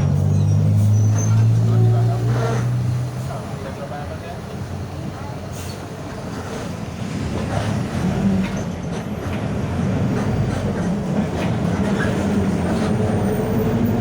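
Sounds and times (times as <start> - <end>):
rear differential growling: 0.0 - 3.3
bus diesel engine drone: 0.0 - 14.0.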